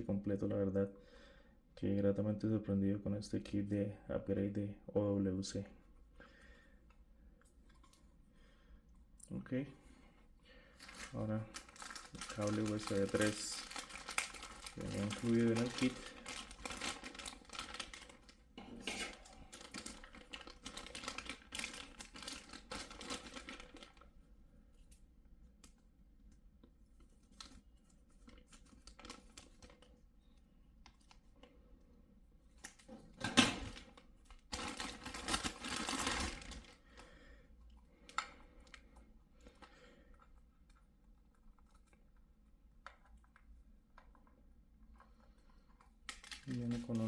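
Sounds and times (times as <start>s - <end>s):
plastic packaging crinkling: 10.8s - 24.1s, 27.2s - 30.0s, 33.5s - 37.1s, 46.0s - 47.0s.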